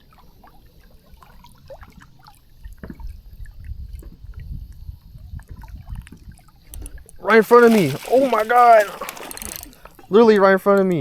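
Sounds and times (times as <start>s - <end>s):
water splashing and dripping: 5.4s - 10.1s.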